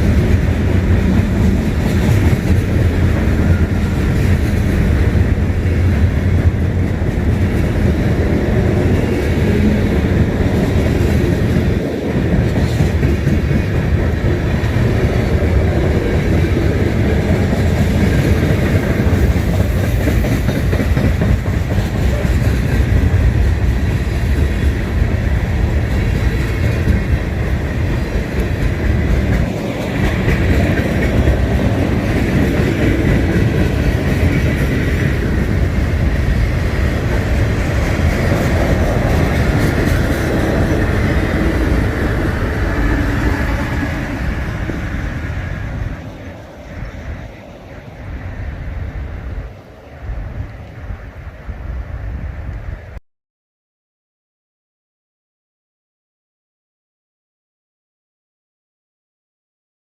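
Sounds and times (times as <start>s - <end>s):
wheels clicking over rail joints: 0.0s - 25.1s, 25.7s - 45.2s
train cars rumbling past: 0.0s - 53.0s.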